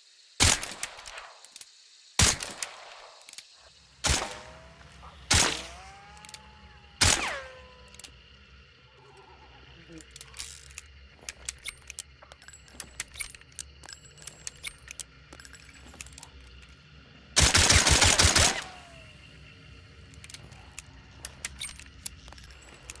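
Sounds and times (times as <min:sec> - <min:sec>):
small metallic clicks and jingles: 0:00.5 - 0:17.0, 0:17.7 - 0:23.0
suppressed revolver gunshots: 0:02.2 - 0:03.2, 0:04.0 - 0:06.4, 0:07.0 - 0:07.6.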